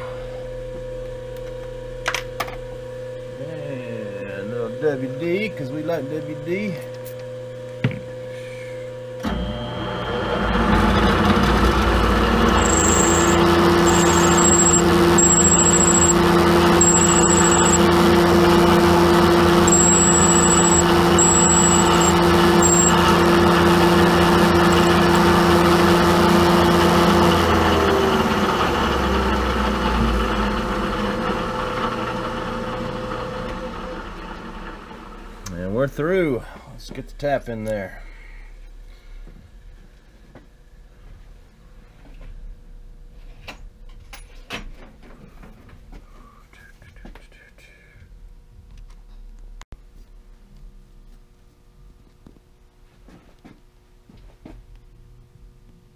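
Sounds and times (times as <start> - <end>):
milling machine spindle running: 9.3 - 34.9.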